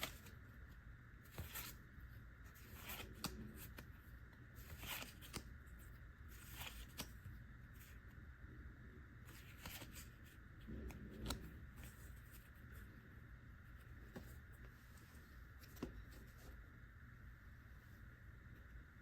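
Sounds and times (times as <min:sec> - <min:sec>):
trading cards rustling: 0:00.0 - 0:00.4, 0:02.5 - 0:08.0, 0:09.3 - 0:12.8.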